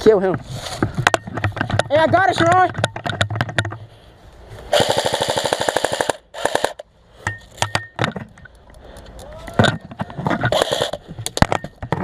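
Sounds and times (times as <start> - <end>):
airsoft gun firing: 4.7 - 6.8, 10.5 - 11.0.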